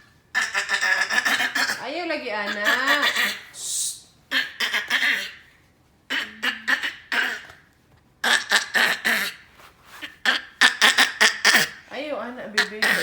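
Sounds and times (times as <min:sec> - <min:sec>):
baby making raspy throat sound: 0:00.4 - 0:01.9, 0:06.1 - 0:07.6, 0:08.2 - 0:09.4, 0:10.2 - 0:11.8, 0:12.6 - 0:13.0.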